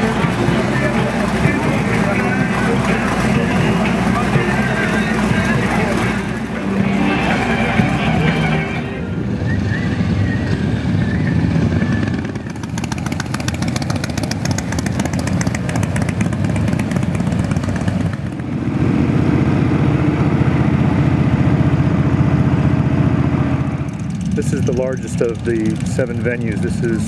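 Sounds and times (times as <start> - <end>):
rapid ticking clatter: 0.0 - 7.8, 12.2 - 18.5, 23.9 - 27.0
motorcycle engines running: 0.0 - 27.0.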